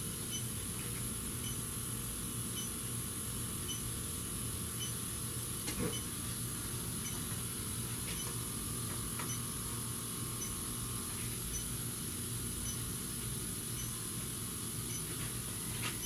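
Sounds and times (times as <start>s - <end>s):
steady hum and hiss: 0.0s - 16.0s
leak detector ticking: 13.7s - 14.0s.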